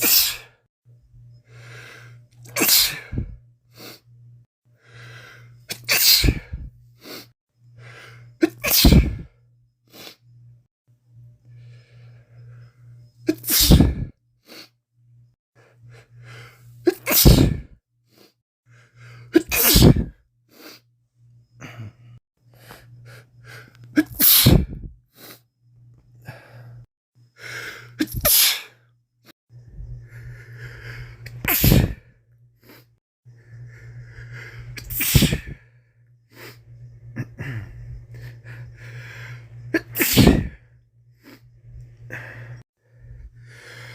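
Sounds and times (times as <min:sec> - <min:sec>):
man sneezing: 0:00.0 - 0:00.5, 0:02.5 - 0:03.2, 0:05.7 - 0:06.6, 0:08.4 - 0:09.2, 0:13.3 - 0:14.0, 0:16.9 - 0:17.7, 0:19.4 - 0:20.1, 0:24.0 - 0:24.8, 0:28.0 - 0:28.7, 0:31.5 - 0:32.0, 0:34.8 - 0:35.6, 0:39.8 - 0:40.6
sniffles and breaths: 0:36.3 - 0:43.9.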